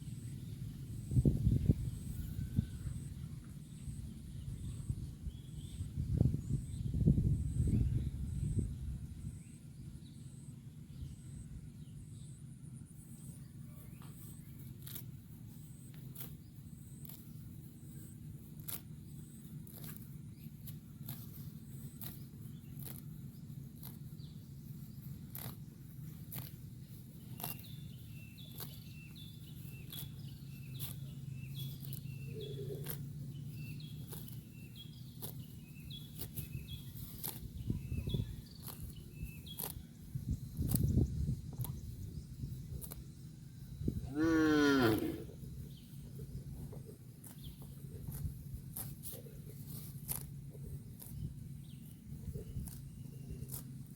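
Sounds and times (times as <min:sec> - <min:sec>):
bird chirping: 0:00.0 - 0:53.9
low hum: 0:00.0 - 0:53.9
cow tearing grass: 0:13.2 - 0:53.9.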